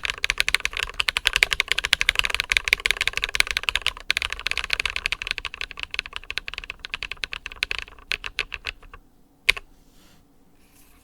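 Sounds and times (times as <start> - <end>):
mechanical keyboard typing: 0.0 - 9.6.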